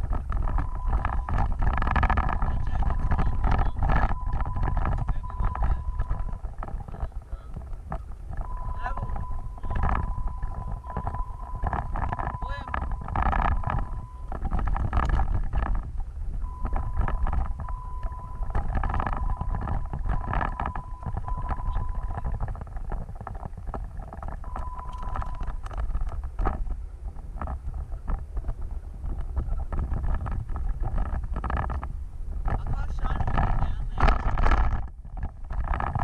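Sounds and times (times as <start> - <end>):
thin high whine: 0.0 - 22.9
knocks and rattles: 0.0 - 36.0
off-road vehicle rumbling: 0.0 - 36.0
wind on microphone: 0.0 - 36.0.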